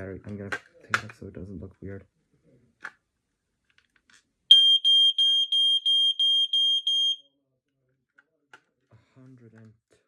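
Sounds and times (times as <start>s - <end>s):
smoke alarm beeping: 4.5s - 7.4s.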